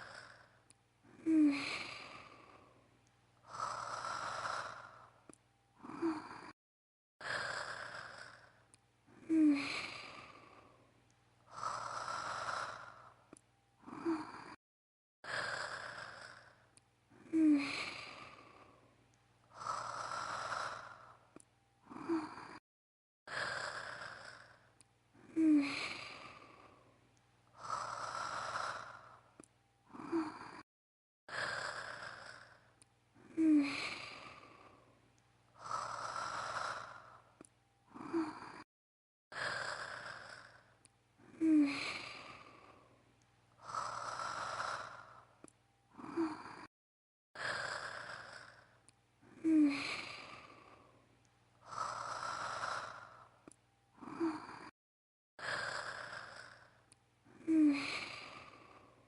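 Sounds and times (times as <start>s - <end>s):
woman snoring: 0.0s - 6.6s, 7.2s - 14.6s, 15.2s - 22.6s, 23.3s - 30.7s, 31.3s - 38.7s, 39.3s - 46.8s, 47.4s - 54.8s, 55.4s - 59.0s.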